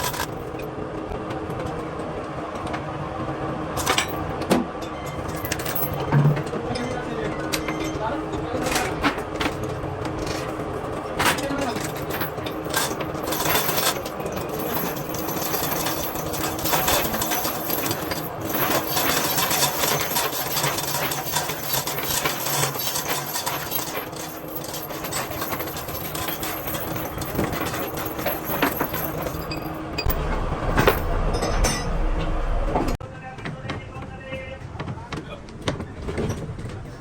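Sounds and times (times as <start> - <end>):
machinery rapid clatter: 5.1 - 33.0
low rumble: 29.9 - 33.0.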